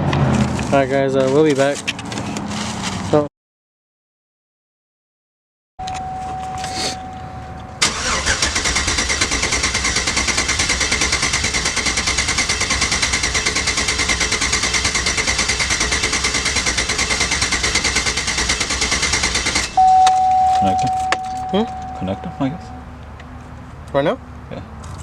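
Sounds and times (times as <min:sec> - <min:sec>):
steady beep: 0:05.8 - 0:07.8, 0:19.8 - 0:23.0
car engine idling with lope: 0:05.9 - 0:25.0.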